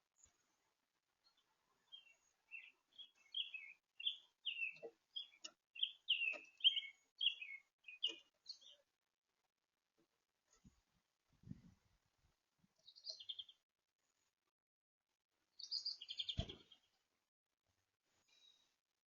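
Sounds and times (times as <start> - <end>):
small birds chirping: 1.2 - 8.9, 12.7 - 13.6, 15.5 - 17.0.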